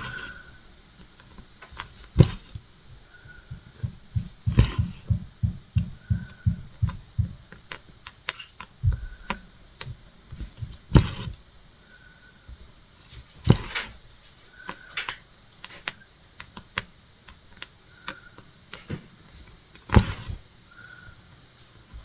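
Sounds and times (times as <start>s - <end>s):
needle popping through fabric: 1.8s - 2.6s, 3.5s - 7.4s
louder knocks: 3.5s - 7.4s.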